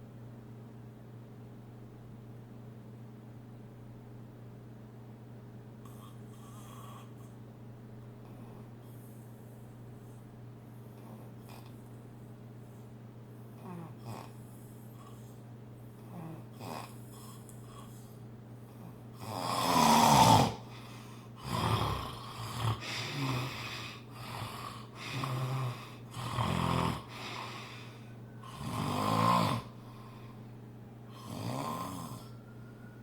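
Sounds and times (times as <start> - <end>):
steady low hum: 0.0 - 33.0
loud snoring: 13.6 - 14.4, 16.1 - 17.9, 19.2 - 20.8, 21.4 - 29.8, 31.1 - 32.4.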